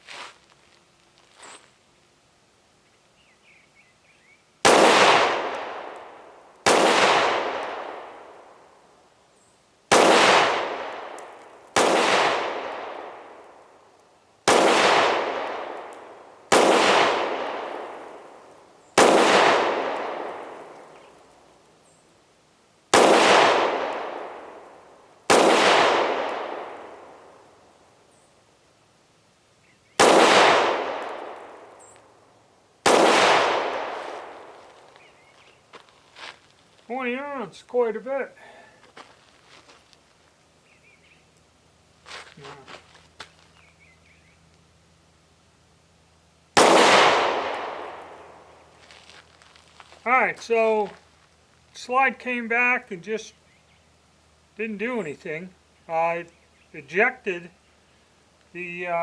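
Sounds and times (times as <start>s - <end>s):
pistol shots with echo: 4.7s - 8.5s, 9.9s - 13.5s, 14.5s - 18.4s, 19.0s - 20.8s, 23.0s - 24.7s, 25.3s - 27.3s, 30.0s - 31.8s, 32.8s - 34.5s, 46.6s - 48.4s.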